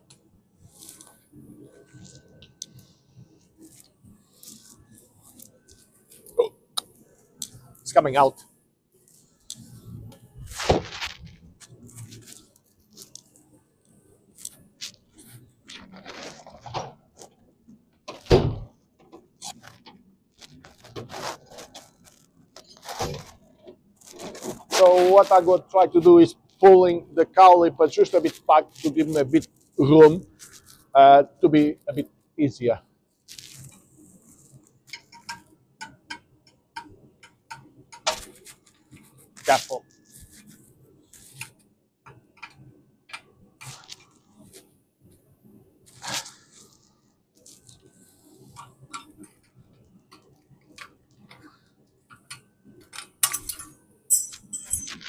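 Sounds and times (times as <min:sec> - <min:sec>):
metal parts and tools clinking: 0:53.0 - 0:55.0.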